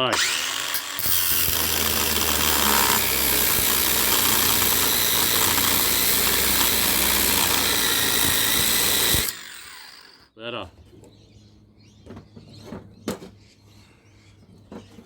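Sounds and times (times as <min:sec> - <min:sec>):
angle grinder cutting metal: 0:00.0 - 0:10.2.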